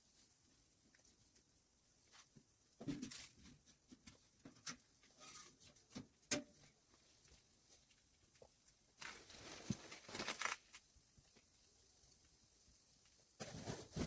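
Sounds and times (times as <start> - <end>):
rustling: 9.0 - 11.4, 13.4 - 14.0.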